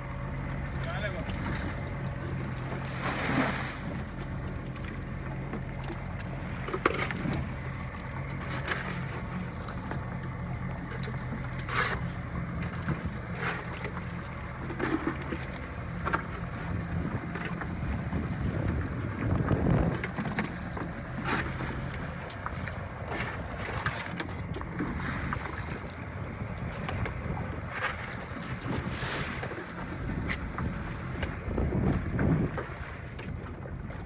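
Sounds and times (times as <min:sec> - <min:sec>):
boat engine running: 0:00.0 - 0:34.0
water noise: 0:00.0 - 0:34.0
wind: 0:00.0 - 0:34.0.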